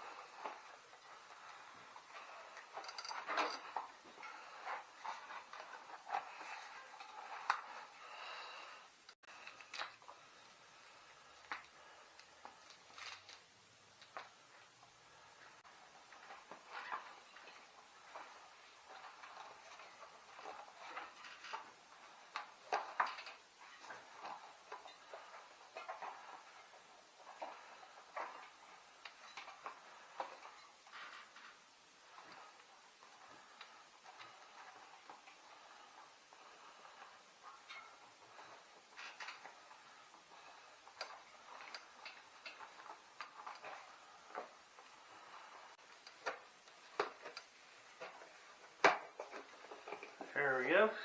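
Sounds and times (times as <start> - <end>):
light clicks taps and scrapes: 0.2 - 8.0, 16.0 - 50.3
hands clicking on bicycle wheel: 33.3 - 50.3.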